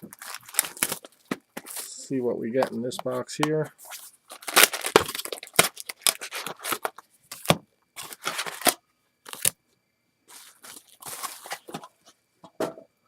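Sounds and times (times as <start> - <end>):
plastic wrapping tearing and crinkling: 0.0 - 2.0, 3.9 - 9.5.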